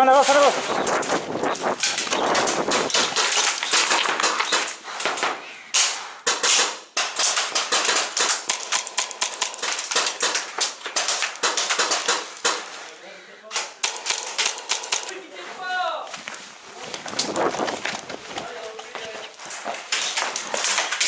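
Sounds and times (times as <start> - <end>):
airsoft rifle fire: 1.8 - 4.8, 5.8 - 12.8.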